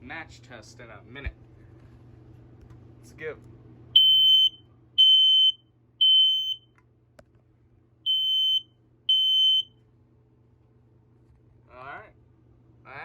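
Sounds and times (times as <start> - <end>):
smoke alarm beeping: 4.0 - 6.7, 8.1 - 9.7.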